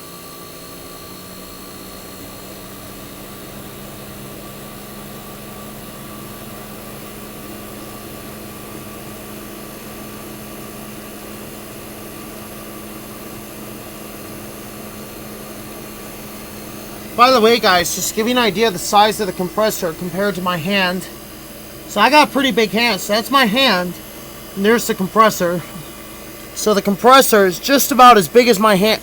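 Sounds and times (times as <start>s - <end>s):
air conditioner compressor hum: 0.0s - 29.0s
fans rushing: 15.7s - 29.0s.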